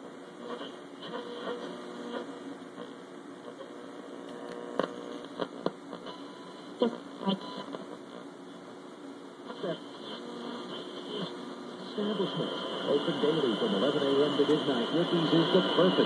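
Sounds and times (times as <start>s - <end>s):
radio crackles: 0.0s - 16.0s
radio speaker hum and hiss: 0.0s - 16.0s
broadcast speech: 10.7s - 16.0s.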